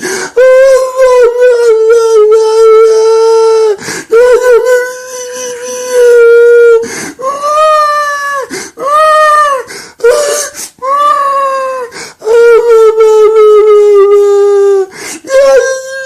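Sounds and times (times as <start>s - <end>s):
gasping in-breaths: 0.0s - 0.4s, 3.8s - 4.1s, 6.8s - 7.2s, 8.5s - 8.8s, 9.7s - 10.8s, 11.9s - 12.2s, 14.9s - 15.3s
man crying with wails: 0.0s - 16.0s.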